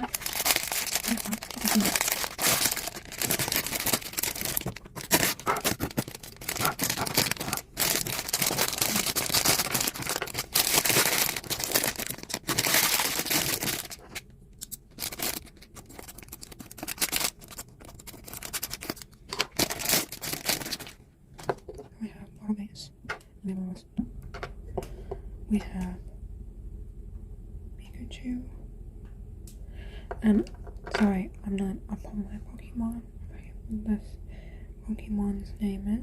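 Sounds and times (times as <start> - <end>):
packaging rustling: 0.0 - 21.5.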